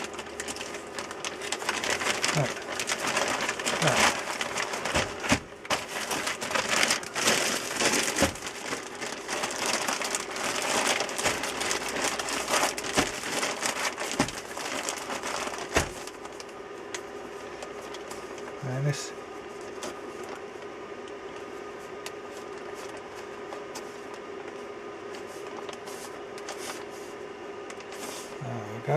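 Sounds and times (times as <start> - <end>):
hands rummaging and rustling: 0.0 - 16.4.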